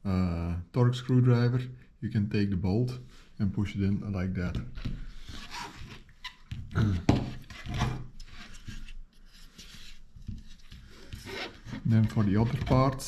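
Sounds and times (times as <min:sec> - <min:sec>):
plastic parts rubbing: 0:04.6 - 0:13.0.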